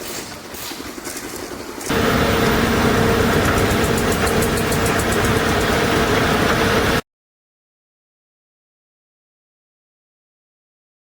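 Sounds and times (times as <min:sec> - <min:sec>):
engine humming: 0:01.9 - 0:07.0.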